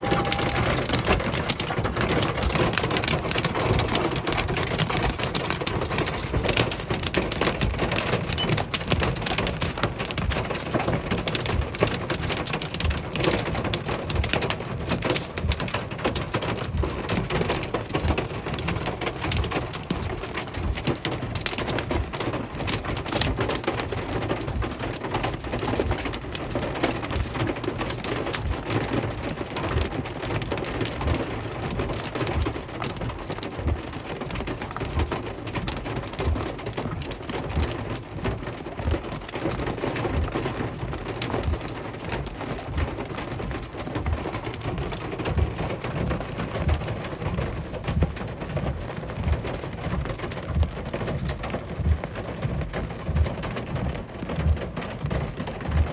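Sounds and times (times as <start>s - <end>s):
hail rattling on hard surfaces: 0.0s - 55.9s
low thumps: 44.0s - 55.9s.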